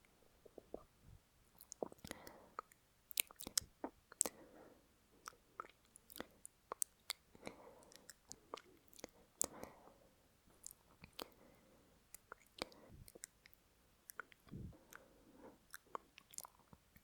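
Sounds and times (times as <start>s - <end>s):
soft breaths: 0.0s - 2.8s, 4.2s - 5.4s, 7.3s - 13.2s, 14.3s - 16.0s
wet lip and mouth clicks: 1.6s - 4.4s, 5.2s - 9.7s, 10.5s - 11.4s, 12.1s - 17.0s.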